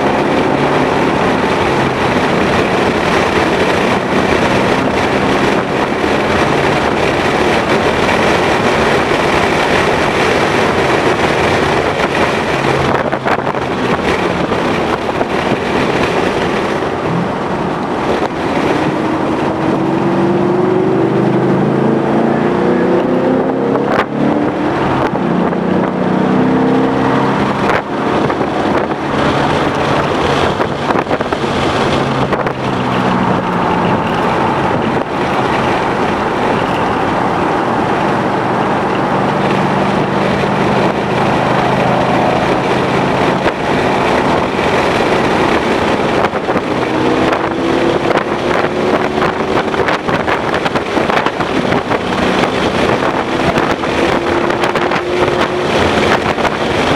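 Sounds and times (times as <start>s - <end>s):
car engine revving: 0.0s - 56.9s
wind and road noise: 0.0s - 56.9s.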